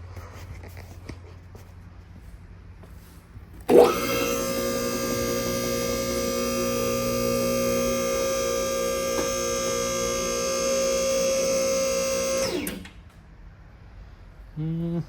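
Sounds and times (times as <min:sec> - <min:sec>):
hydraulic pump motor humming: 0:03.6 - 0:13.0.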